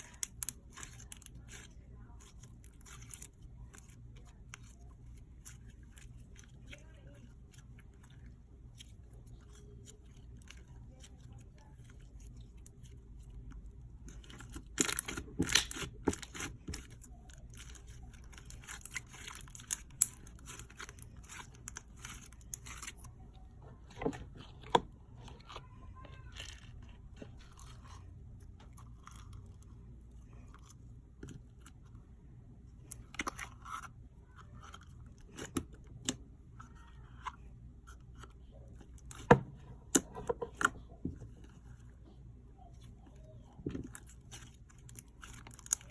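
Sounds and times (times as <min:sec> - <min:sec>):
slime crackling and popping: 0:14.3 - 0:23.0.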